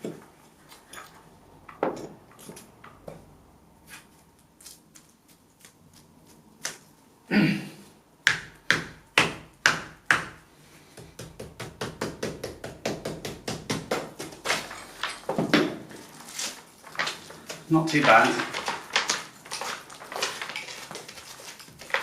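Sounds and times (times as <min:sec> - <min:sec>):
hand tool striking a wall: 0:08.2 - 0:15.8.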